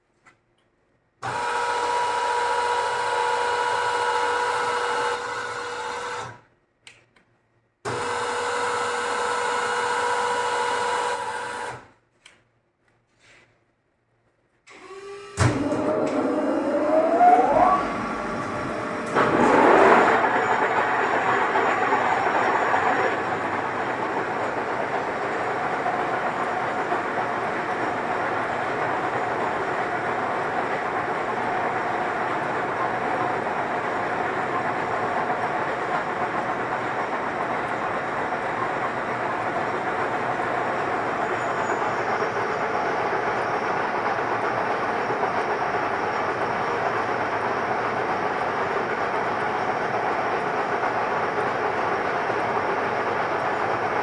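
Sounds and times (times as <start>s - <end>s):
lathe running: 14.8s - 54.0s.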